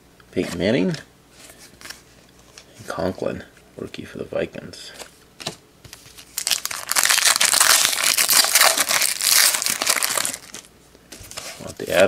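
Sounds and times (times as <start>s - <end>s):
wrapper tearing and crinkling: 6.3s - 10.7s.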